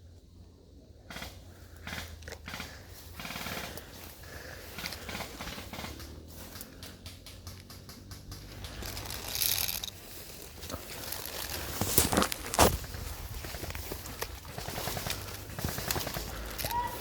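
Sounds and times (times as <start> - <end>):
footsteps in dry leaves: 3.6 - 6.8, 8.2 - 17.0.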